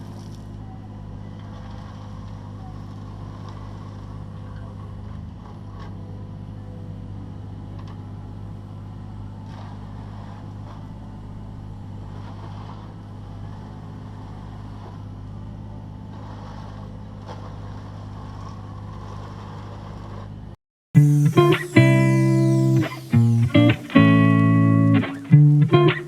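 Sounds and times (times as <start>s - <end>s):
excavator diesel engine running: 21.0s - 26.0s.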